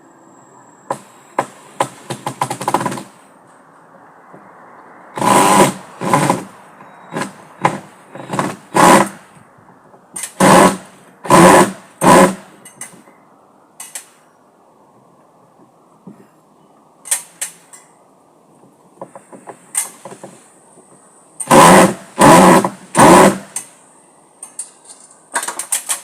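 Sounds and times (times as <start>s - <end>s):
power drill driving screws: 5.2s - 6.5s, 7.1s - 9.2s, 10.2s - 12.4s, 21.4s - 23.7s.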